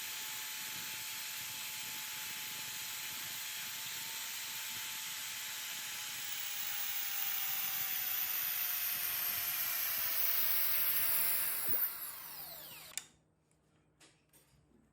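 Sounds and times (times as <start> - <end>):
friction welding grinding whine: 10.0 - 13.0.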